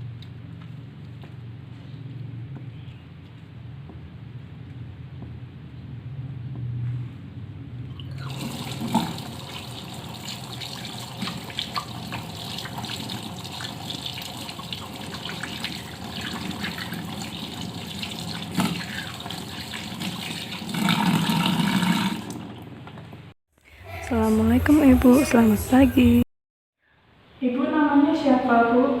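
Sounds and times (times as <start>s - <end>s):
tap water running into sink: 8.2s - 22.4s.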